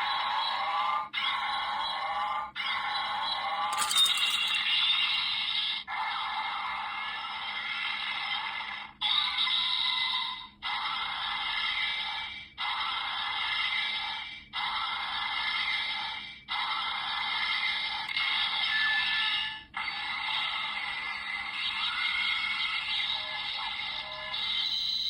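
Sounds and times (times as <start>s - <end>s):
tinny toy sword sound effects: 3.7s - 4.8s.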